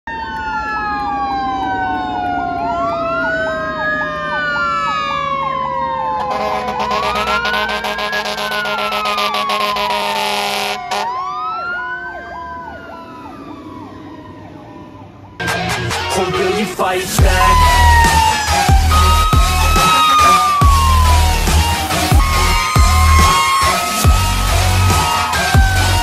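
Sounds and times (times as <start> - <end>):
fast-cycling electronic siren: 0.1 - 26.0
truck air horns blasting: 6.1 - 11.3.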